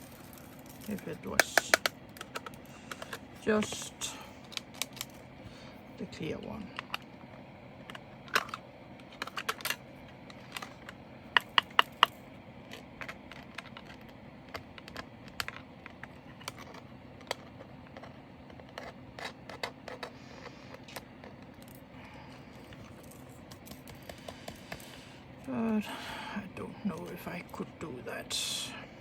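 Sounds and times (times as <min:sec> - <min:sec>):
plastic containers clicking: 0:00.0 - 0:05.2, 0:07.8 - 0:21.8.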